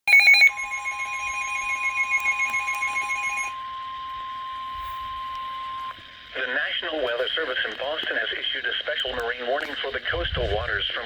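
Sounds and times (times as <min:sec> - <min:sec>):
pulsing beep: 0:00.0 - 0:03.7
steady alarm tone: 0:00.1 - 0:09.0.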